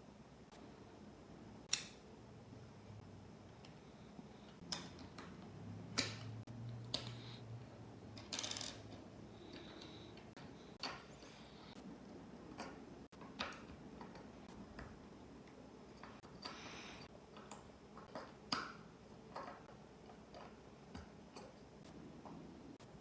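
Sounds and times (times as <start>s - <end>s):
plastic bricks clicking: 8.2s - 9.0s.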